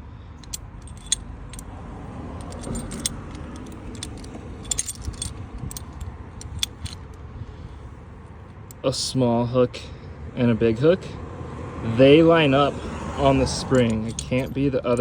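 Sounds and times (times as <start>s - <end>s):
low background rumble: 0.0s - 8.8s
metal hooks clinking: 0.4s - 1.7s, 2.3s - 7.2s, 13.2s - 15.0s.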